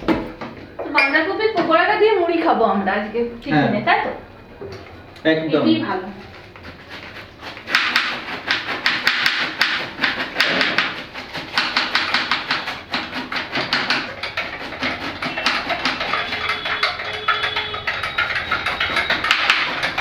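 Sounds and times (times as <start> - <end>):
knife chopping on cutting board: 6.9 - 16.8.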